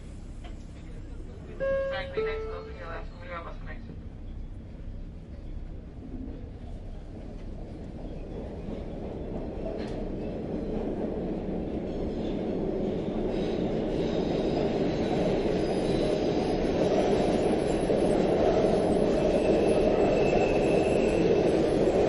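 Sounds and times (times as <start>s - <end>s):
train rumbling: 0.0s - 22.0s
train wheel squeal: 13.0s - 22.0s.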